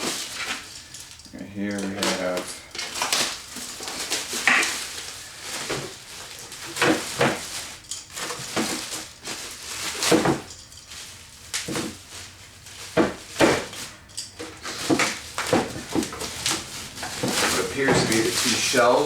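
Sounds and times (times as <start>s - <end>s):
packing material rustling: 0.0s - 19.0s
metal parts clinking: 13.7s - 19.0s.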